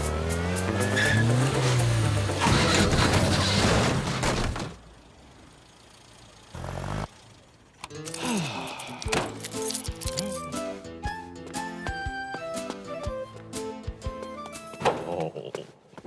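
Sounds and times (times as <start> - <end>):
music: 0.0 - 2.9, 7.9 - 15.0
cartoon car engine revving: 0.0 - 4.6.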